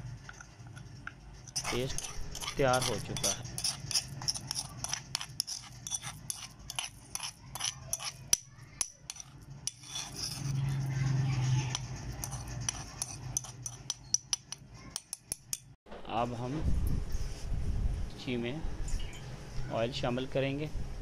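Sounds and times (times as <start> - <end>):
utensils clinking and scraping: 0.0 - 15.8.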